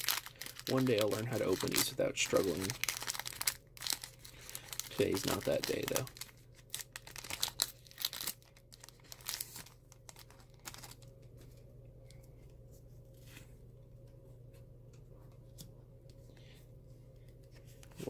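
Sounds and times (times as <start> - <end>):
plastic packaging crinkling and tearing: 0.0 - 11.6
faint steady hum: 0.0 - 18.0.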